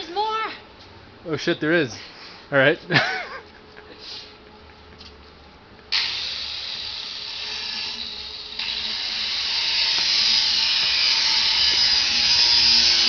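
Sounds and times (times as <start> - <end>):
power tool high hissing whine: 5.9 - 13.0.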